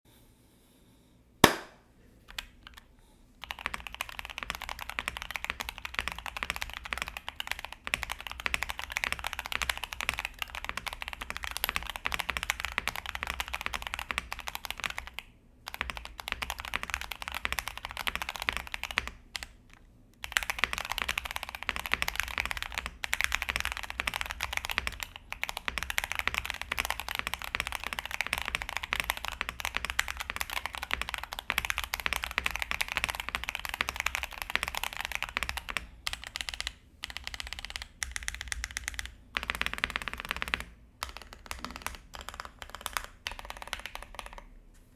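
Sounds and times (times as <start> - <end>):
sharp loud click: 1.4 - 1.8
mechanical keyboard typing: 3.4 - 44.5.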